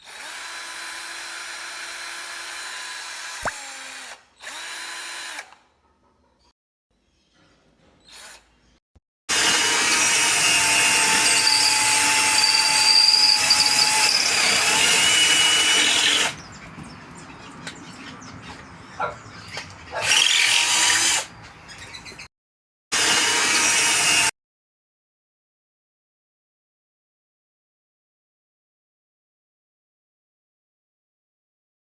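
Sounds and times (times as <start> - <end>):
cordless drill running: 0.0 - 5.5, 9.3 - 16.4, 23.0 - 24.3.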